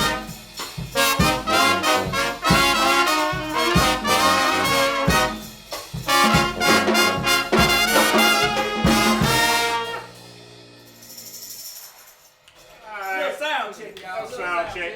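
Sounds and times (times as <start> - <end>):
brass band playing: 0.0 - 10.7
steady drum beat: 0.0 - 11.7.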